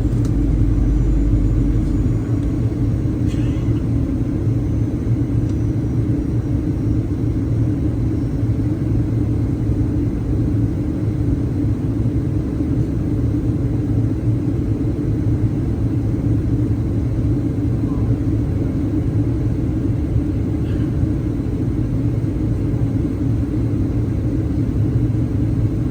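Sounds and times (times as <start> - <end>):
airplane cabin engine rumble: 0.0 - 25.9.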